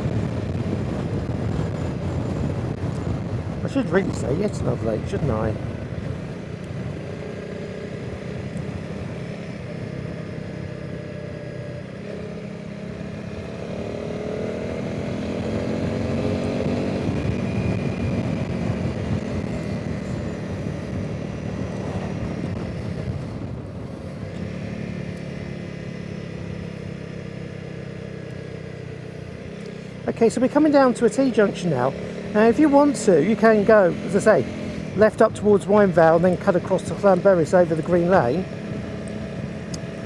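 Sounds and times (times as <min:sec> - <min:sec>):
wind rush: 0:00.0 - 0:12.2, 0:12.8 - 0:24.6
motorcycle engine running: 0:00.0 - 0:40.0.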